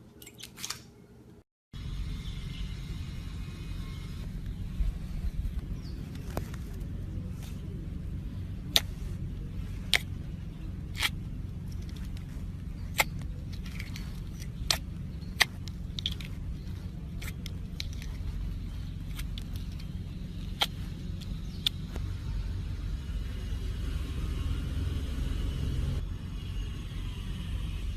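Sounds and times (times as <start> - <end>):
steady low hum: 0.8 - 27.9
slime squishing with sticky pops: 10.9 - 22.1.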